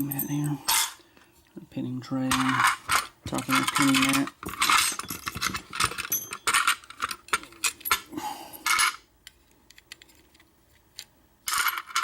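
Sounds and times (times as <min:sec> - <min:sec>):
small metal parts clinking: 0:00.0 - 0:01.0, 0:02.3 - 0:09.0, 0:11.4 - 0:12.0.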